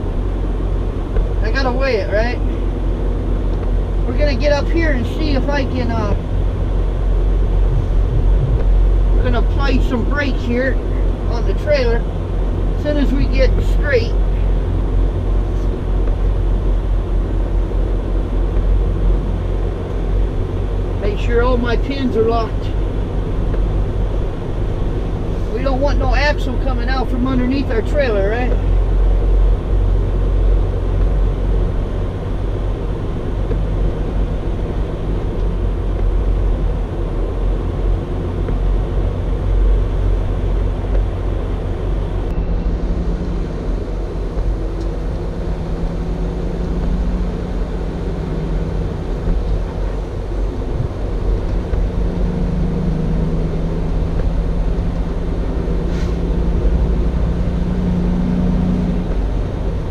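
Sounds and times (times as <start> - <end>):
diesel truck engine rumbling: 0.0 - 59.9
engine hum: 0.0 - 59.9.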